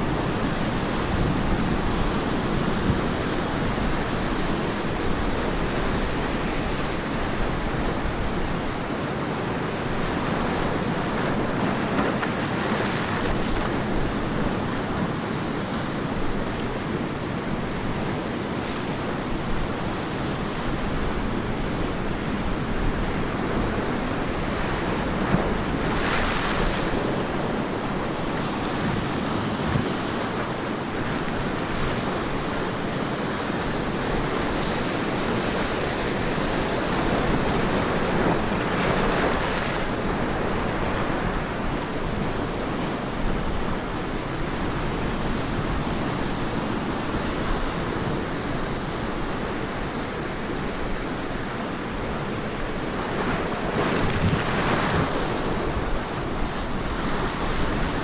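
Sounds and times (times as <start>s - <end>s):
ocean waves breaking: 0.0s - 58.0s.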